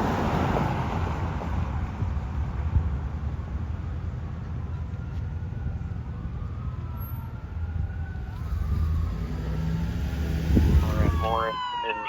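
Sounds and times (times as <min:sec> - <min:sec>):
low engine rumble: 0:00.0 - 0:11.8
fire engine siren wailing: 0:03.8 - 0:12.0.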